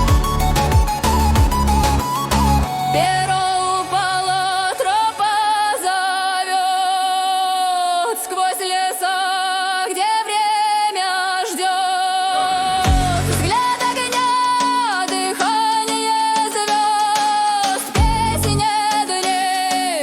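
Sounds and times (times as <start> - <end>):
low musical accompaniment: 0.0 - 3.6
high voice singing with vibrato: 2.6 - 20.0.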